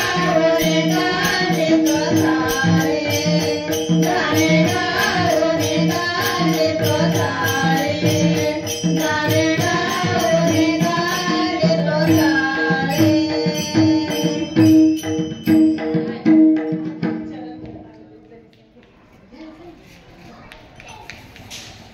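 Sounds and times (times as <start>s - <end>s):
group singing devotional song: 0.0s - 14.9s
hand cymbals: 0.0s - 16.8s
drum strokes: 0.0s - 17.9s.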